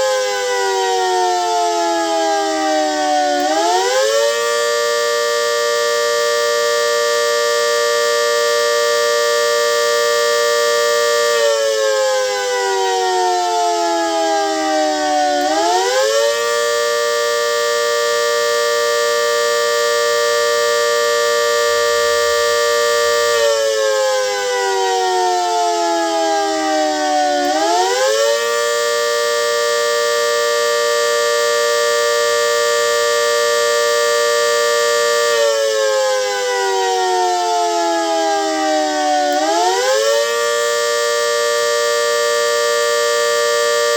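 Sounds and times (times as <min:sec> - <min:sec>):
warning siren chord tone: 0:00.0 - 0:43.9.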